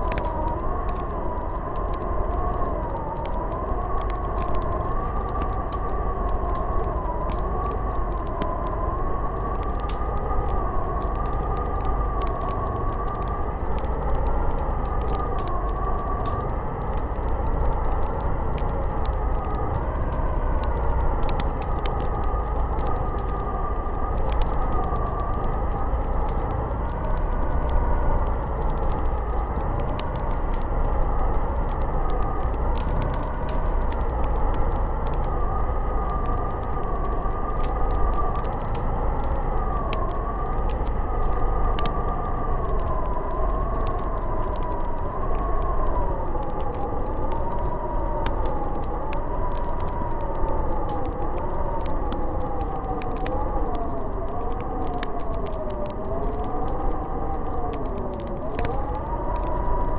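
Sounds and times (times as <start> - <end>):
wind howling: 0.0 - 59.9.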